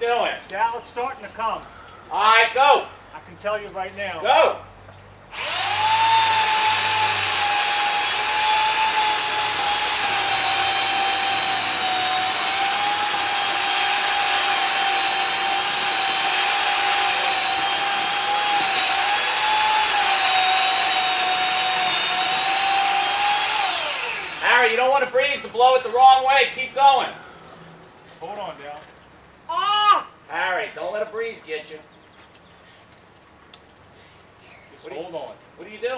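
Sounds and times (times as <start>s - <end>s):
electric saw cutting tree limb: 5.3s - 25.3s.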